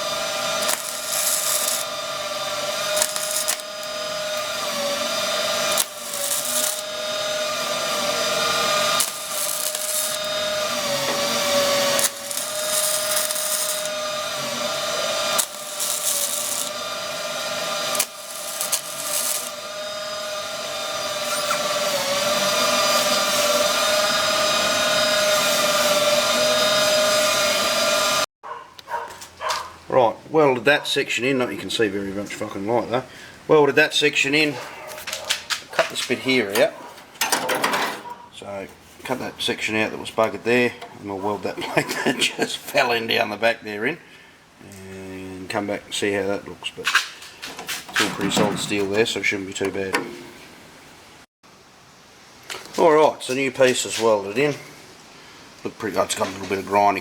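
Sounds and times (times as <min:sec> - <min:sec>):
angle grinder cutting steel: 0:00.0 - 0:27.8.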